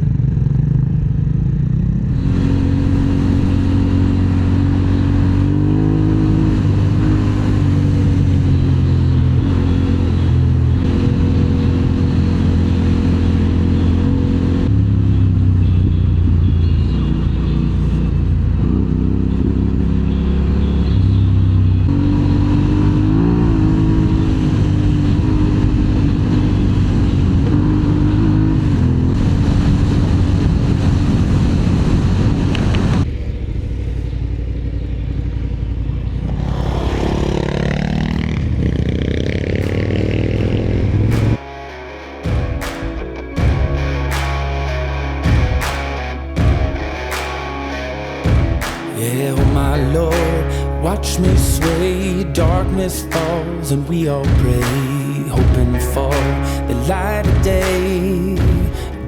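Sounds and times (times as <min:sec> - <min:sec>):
motorcycle engine running: 0:00.0 - 0:41.5, 0:42.2 - 0:59.0
wind and road noise: 0:00.0 - 0:41.6.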